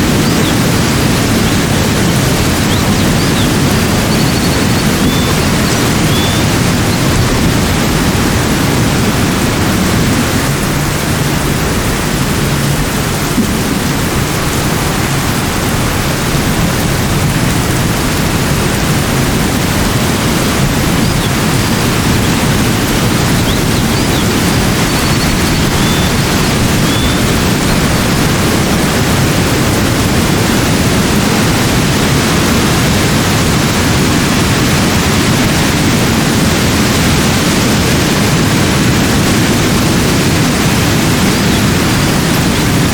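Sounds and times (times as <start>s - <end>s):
water rushing: 0.0s - 42.9s
faint high chirps: 2.6s - 6.5s.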